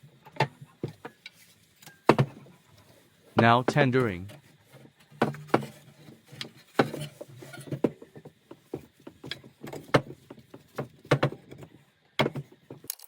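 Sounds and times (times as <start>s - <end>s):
wooden knocks and creaks: 3.4s - 12.9s.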